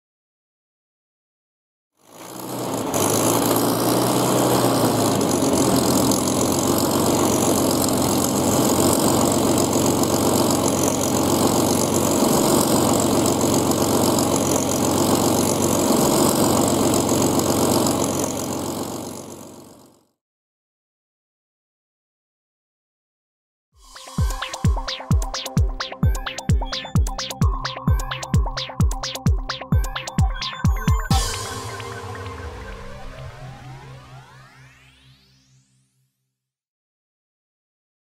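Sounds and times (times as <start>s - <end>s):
aircraft piston engine running: 2.2s - 19.6s, 29.9s - 33.6s.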